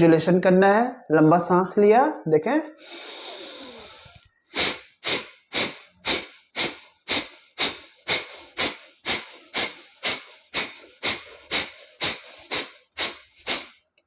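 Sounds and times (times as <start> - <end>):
sharp nasal exhalations: 2.8 - 14.0.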